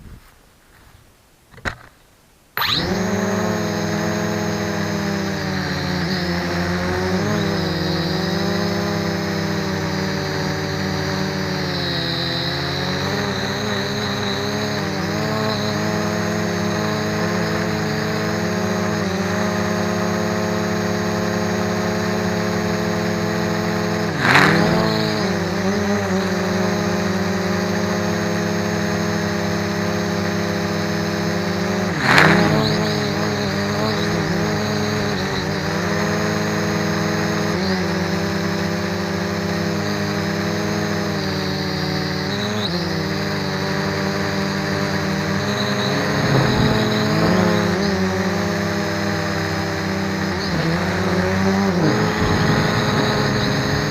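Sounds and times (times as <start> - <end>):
drone motors whining: 2.6 - 53.9.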